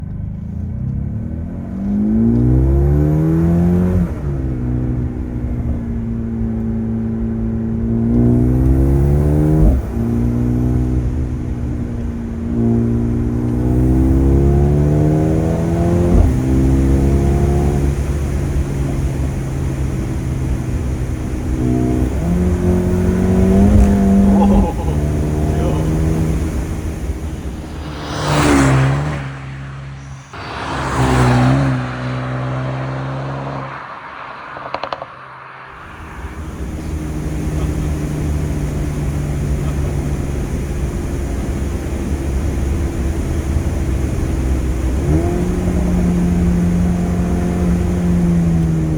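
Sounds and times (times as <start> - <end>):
car engine accelerating: 0.0 - 48.9
exhaust cracks: 17.7 - 40.6.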